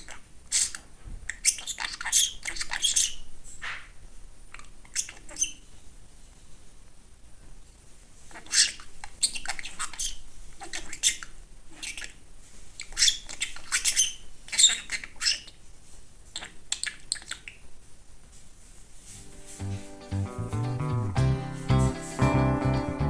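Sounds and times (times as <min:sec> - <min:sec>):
budgerigar chirping and squawking: 0:00.0 - 0:03.8, 0:04.9 - 0:05.6, 0:08.3 - 0:12.2, 0:12.8 - 0:15.6, 0:16.3 - 0:17.6.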